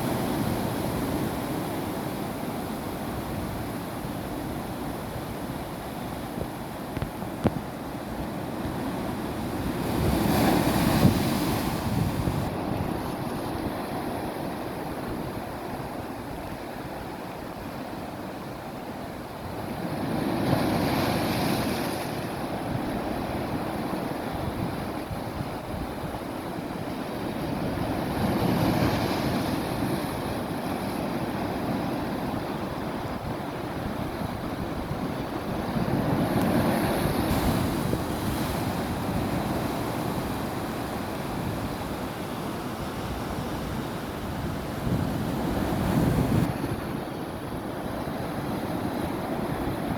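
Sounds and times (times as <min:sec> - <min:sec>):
sea waves washing over rocks: 0:26.6 - 0:49.9.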